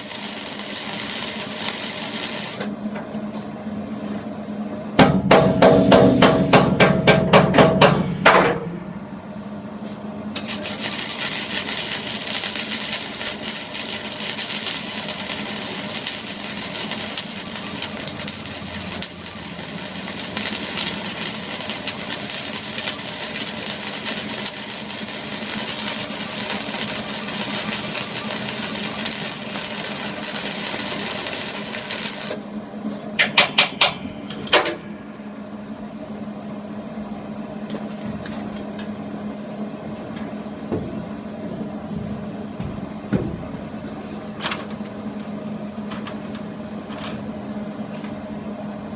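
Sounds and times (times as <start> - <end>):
rapid hammer blows on metal: 5.0 - 8.5.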